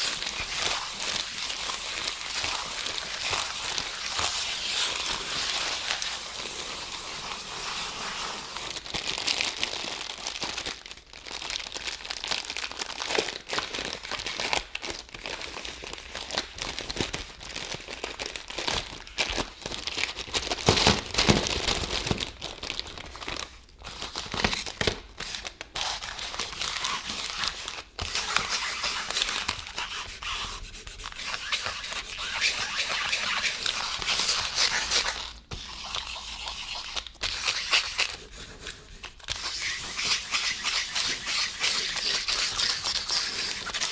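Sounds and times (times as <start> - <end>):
plastic wrapper crinkling: 0.0 - 6.2, 7.2 - 29.8.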